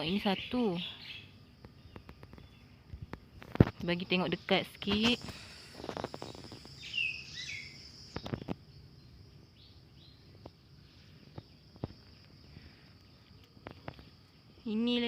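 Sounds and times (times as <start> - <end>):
high-pitched insect drone: 3.6 - 15.0
short bird chirps: 5.4 - 8.4.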